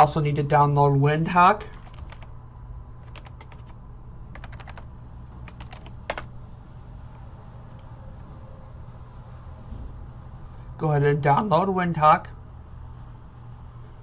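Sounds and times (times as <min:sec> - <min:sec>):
computer keyboard typing: 0:01.7 - 0:02.3, 0:03.0 - 0:06.3.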